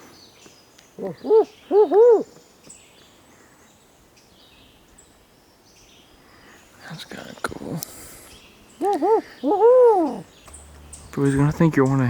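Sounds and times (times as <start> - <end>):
small birds chirping faintly: 0.0 - 12.0
owl hooting: 1.0 - 2.4, 8.8 - 11.2.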